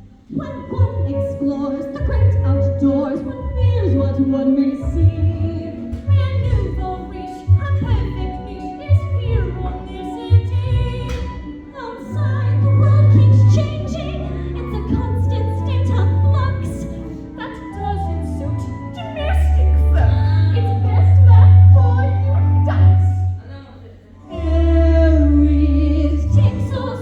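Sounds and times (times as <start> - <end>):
light percussion: 0.0 - 23.5
instrumental accompaniment: 0.0 - 27.0
voices singing: 24.2 - 27.0.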